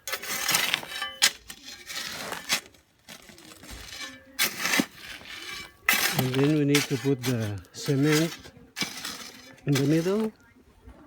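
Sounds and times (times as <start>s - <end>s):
gritty scraping of aggregate: 0.0s - 11.0s.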